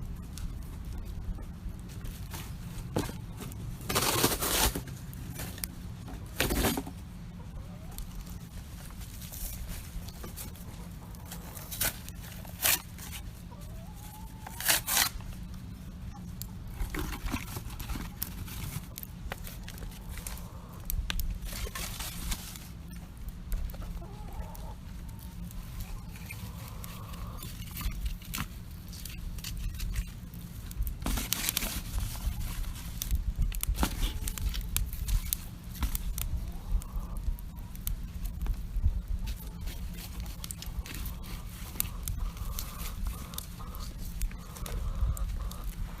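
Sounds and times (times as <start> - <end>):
steady low rumble: 0.0 - 3.9, 31.8 - 46.0
campfire crackling and popping: 0.0 - 13.5, 14.6 - 46.0
hens clucking: 2.4 - 29.5, 33.8 - 46.0.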